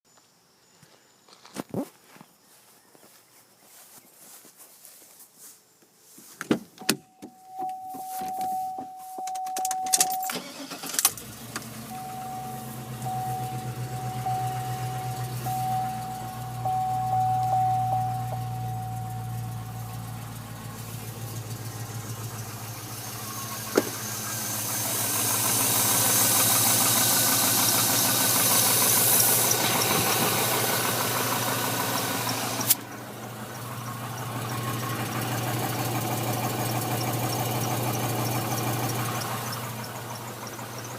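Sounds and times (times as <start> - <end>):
car engine cranking and idling: 6.5 - 40.9
electronic chime: 11.9 - 20.2.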